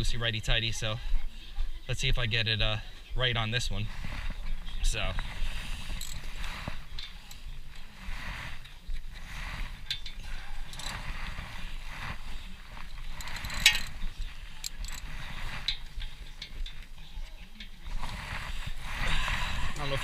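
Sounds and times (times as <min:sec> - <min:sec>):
metal wrenches clinking: 0:05.8 - 0:07.5, 0:09.8 - 0:12.2, 0:13.0 - 0:16.9
socket ratchet clicking: 0:06.0 - 0:06.3, 0:10.8 - 0:11.0, 0:13.2 - 0:14.0, 0:14.6 - 0:15.1.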